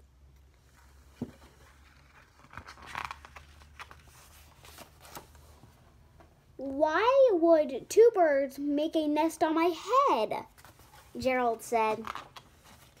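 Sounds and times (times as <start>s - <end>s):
book pages rustling and turning: 0.4s - 6.4s, 10.5s - 13.0s.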